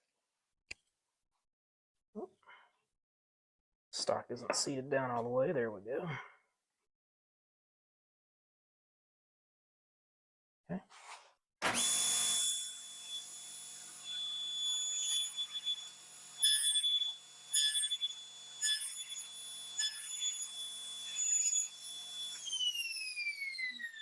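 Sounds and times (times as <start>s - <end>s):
saw cutting wood: 11.6s - 24.0s
table saw whining: 11.6s - 24.0s.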